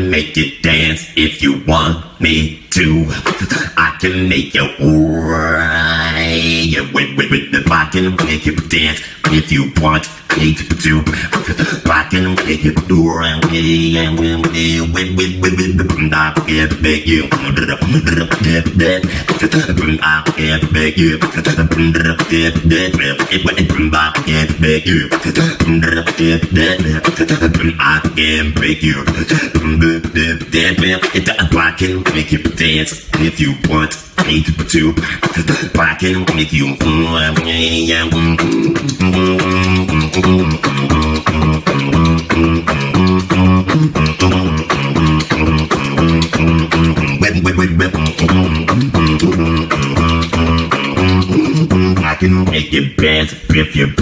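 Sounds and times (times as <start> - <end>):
person beatboxing: 0.0 - 54.0
hummed bass notes: 11.8 - 35.1, 35.7 - 54.0.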